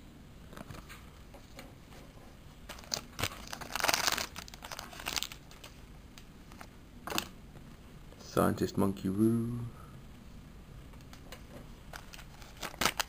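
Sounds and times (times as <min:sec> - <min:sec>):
foil wrapper tearing and crinkling: 0:02.7 - 0:05.7, 0:12.0 - 0:13.0.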